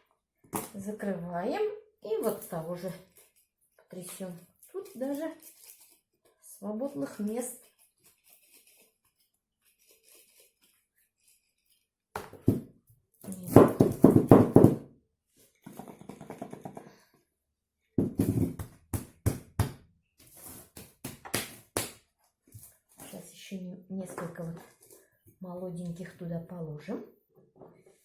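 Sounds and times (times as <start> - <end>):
pine cones and sugar rattling in jar: 2.1 - 10.8.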